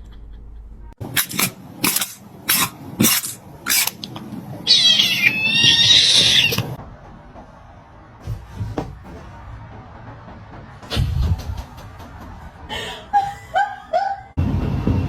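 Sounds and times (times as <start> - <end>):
cat yowling: 4.6 - 6.8.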